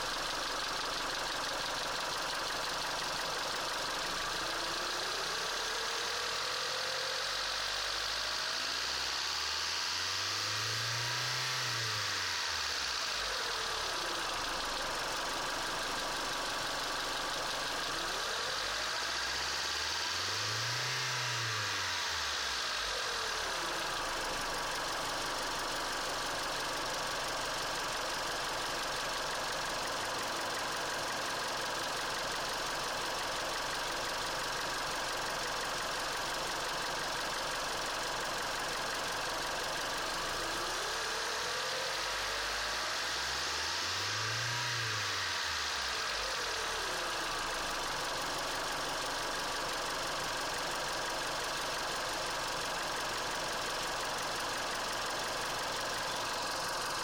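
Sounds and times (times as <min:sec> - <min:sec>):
car engine knocking and rattling: 0:00.0 - 0:06.2, 0:13.5 - 0:18.3, 0:23.5 - 0:41.6, 0:46.3 - 0:57.0.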